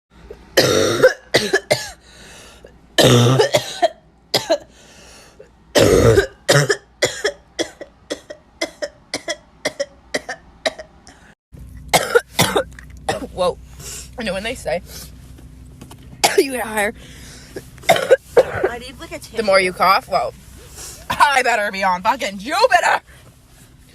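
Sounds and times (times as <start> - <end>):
steady low hum: 0.2 - 23.9
women coughing harshly: 0.6 - 2.0, 3.0 - 4.7, 5.8 - 10.9, 11.9 - 13.3, 16.2 - 16.5, 17.8 - 18.8.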